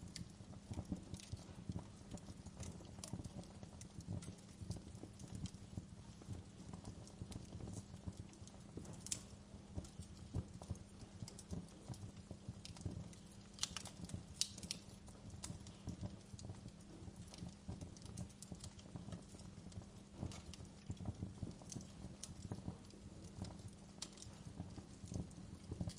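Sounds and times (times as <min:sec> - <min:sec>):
fire crackling and popping: 0:00.0 - 0:25.9
low steady rumble: 0:00.0 - 0:25.9.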